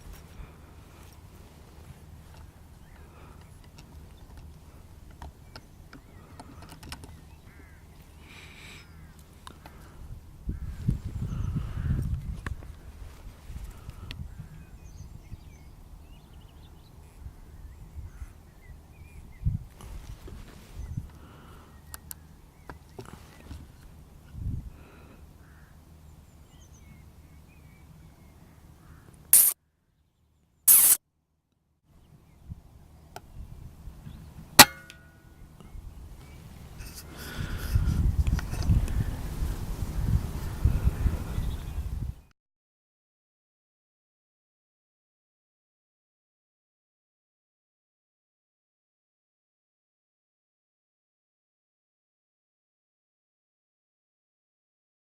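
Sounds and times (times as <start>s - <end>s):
bird calls: 2.3s - 12.0s
low wind rumble: 7.1s - 22.6s, 23.6s - 29.1s, 32.2s - 34.4s, 35.3s - 42.2s
short loud bursts of noise: 30.7s - 31.0s.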